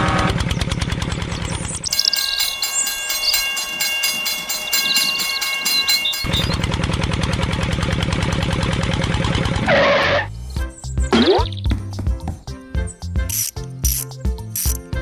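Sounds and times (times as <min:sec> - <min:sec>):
toy train horn chord: 0:00.0 - 0:00.6
small engine putter: 0:00.0 - 0:03.3, 0:04.8 - 0:10.2, 0:13.3 - 0:14.8
fast even clicking: 0:13.3 - 0:14.8.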